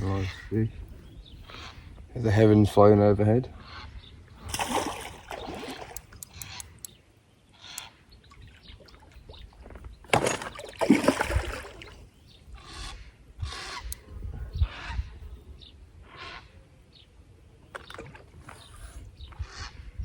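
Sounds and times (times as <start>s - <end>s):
water splashing and sloshing: 4.3s - 6.9s, 7.7s - 12.1s, 17.7s - 18.8s
sharp clicks: 5.7s - 7.0s.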